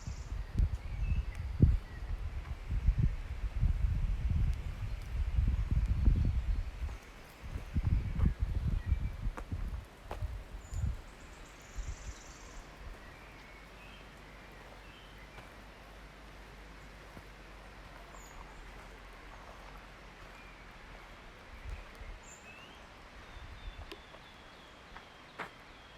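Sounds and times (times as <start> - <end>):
steady low hiss: 0.0 - 25.9
bird chirps: 10.6 - 15.5.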